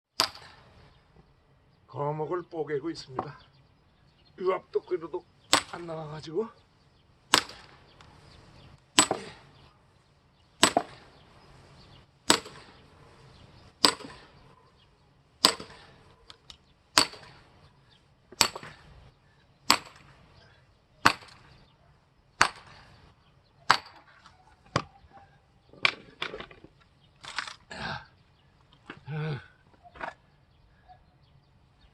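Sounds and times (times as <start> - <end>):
axe splitting log: 5.5 - 5.9, 7.3 - 7.7, 9.0 - 9.4, 10.6 - 11.2, 12.3 - 12.8, 13.8 - 14.3, 15.4 - 16.0, 17.0 - 17.4, 18.3 - 18.8, 19.7 - 20.1, 21.0 - 21.4, 23.7 - 24.1.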